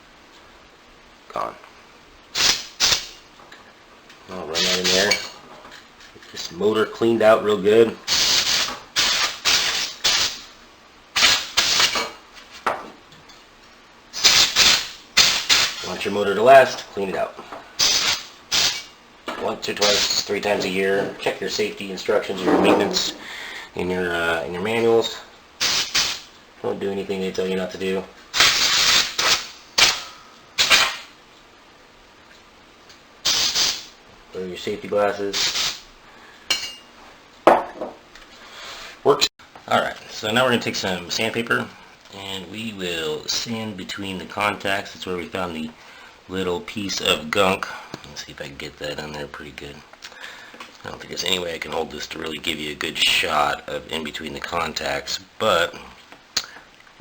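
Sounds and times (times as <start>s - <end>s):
compressed air hissing blasts: 2.3s - 3.2s, 8.1s - 10.6s, 11.2s - 12.0s, 14.2s - 15.8s, 17.8s - 18.9s, 25.6s - 26.3s, 28.3s - 31.1s, 33.2s - 34.0s, 35.4s - 35.9s.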